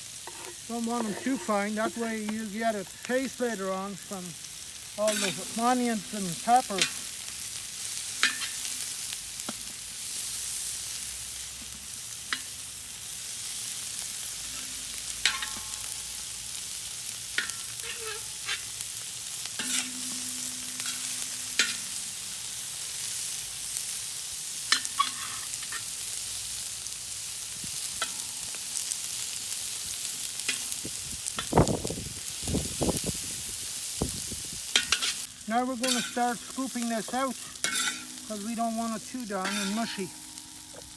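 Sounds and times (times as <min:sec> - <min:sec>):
vegetables sizzling in pan: 0:00.0 - 0:40.9
utensil scraping against pan: 0:00.2 - 0:02.5, 0:05.0 - 0:07.0, 0:17.4 - 0:18.8, 0:19.6 - 0:22.0, 0:24.7 - 0:25.9, 0:34.7 - 0:40.9.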